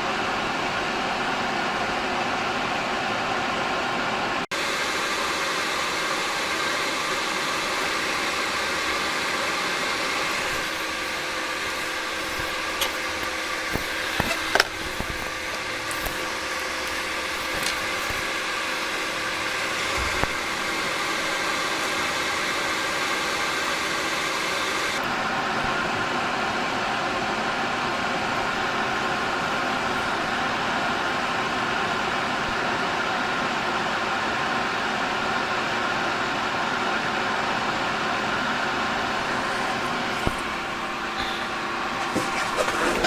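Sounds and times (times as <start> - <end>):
faint hum tones: 4.5 - 25.9
fan-like hiss: 4.5 - 26.3.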